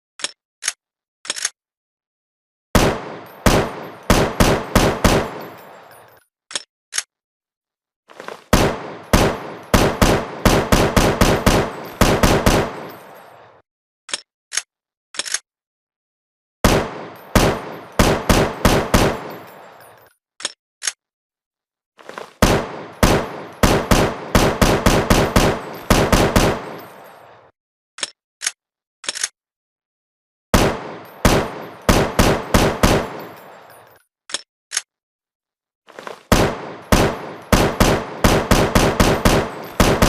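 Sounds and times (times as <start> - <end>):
automatic rifle fire: 2.8 - 5.6, 8.5 - 12.9, 16.6 - 19.4, 22.4 - 26.9, 30.6 - 33.4, 36.3 - 40.0.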